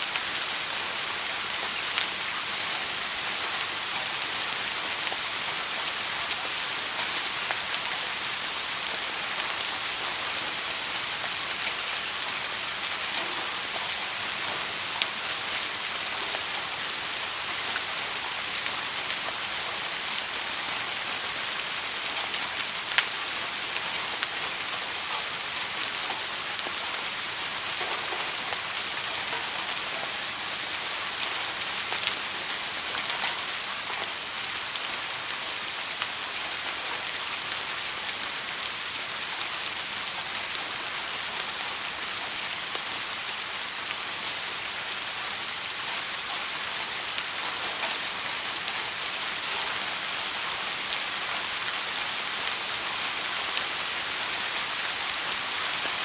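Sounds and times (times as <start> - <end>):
steady rain hiss: 0.0 - 56.0
raindrops pattering on a surface: 0.1 - 56.0.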